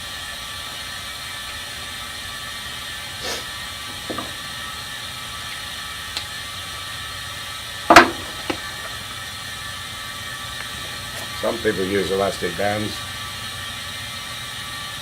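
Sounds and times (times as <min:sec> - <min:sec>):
steady background hiss: 0:02.9 - 0:13.6.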